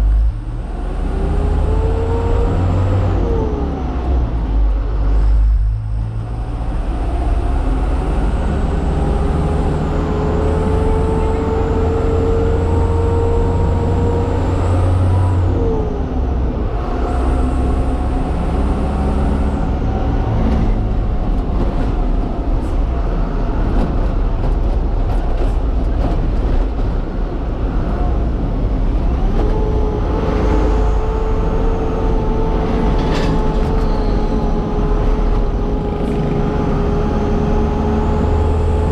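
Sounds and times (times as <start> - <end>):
truck engine rumbling: 0.0 - 38.9
engine whine rising in pitch: 29.0 - 38.9.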